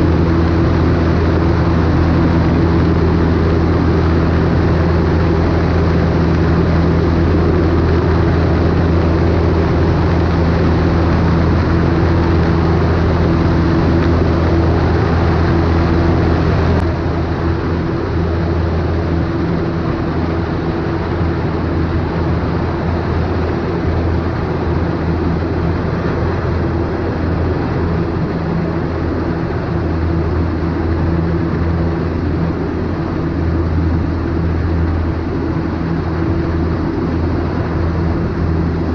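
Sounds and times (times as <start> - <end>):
aircraft engine and propeller droning: 0.0 - 38.9
wind rushing over camera: 0.0 - 38.9.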